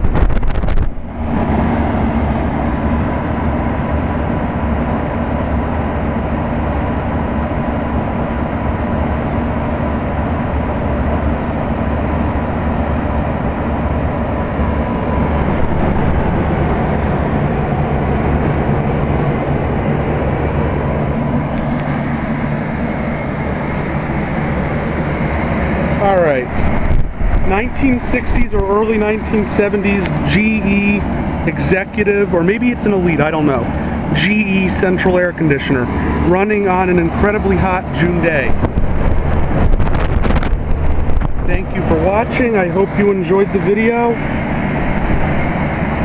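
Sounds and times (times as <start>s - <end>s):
compressor hum: 0.0s - 46.0s
condenser fan rushing air: 0.0s - 46.0s
faint steady whine: 0.0s - 46.0s.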